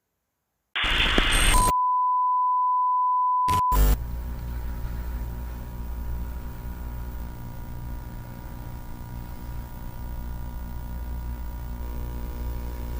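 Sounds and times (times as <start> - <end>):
electronic beep: 1.4 - 4.0
low steady hum with hiss: 4.0 - 12.9.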